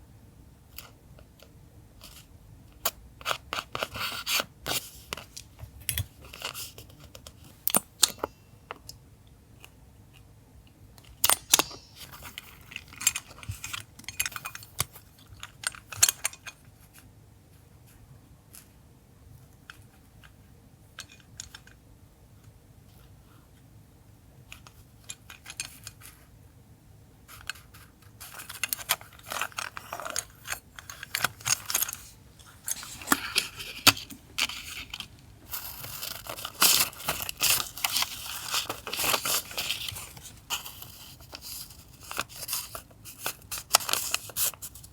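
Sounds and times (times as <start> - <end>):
paper rustling: 27.3 - 44.9.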